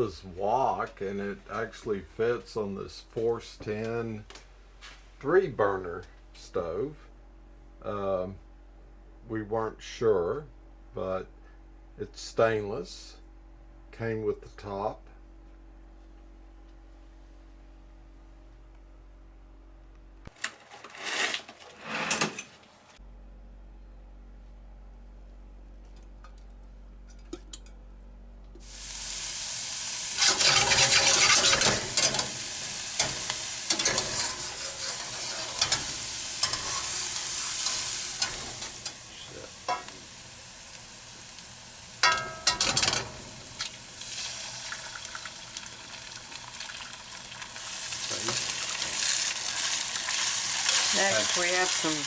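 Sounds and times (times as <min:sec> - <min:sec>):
food sizzling in a wok: 0:28.6 - 0:52.0
utensil scraping a pan: 0:30.1 - 0:39.9.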